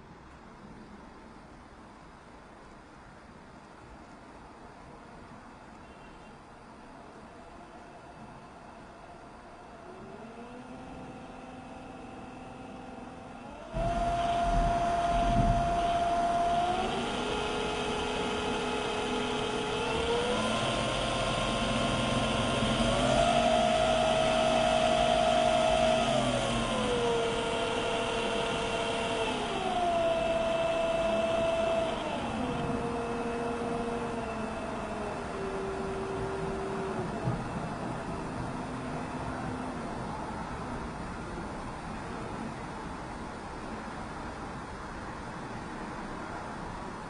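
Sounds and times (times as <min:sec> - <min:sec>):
electric motor whine: 0:07.2 - 0:40.3.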